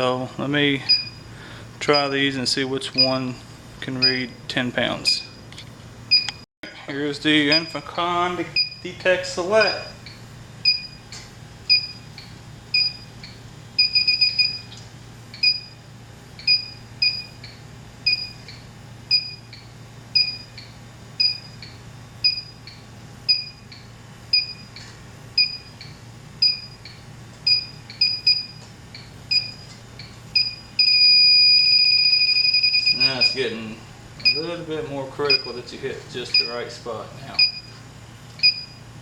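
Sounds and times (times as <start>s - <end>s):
short two-tone beeps: 20.2s - 33.4s, 34.2s - 34.5s, 38.4s - 38.8s.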